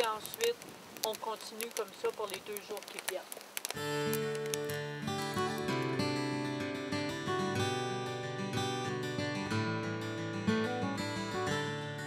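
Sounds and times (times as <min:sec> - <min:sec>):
acoustic guitar playing: 0:03.8 - 0:12.0.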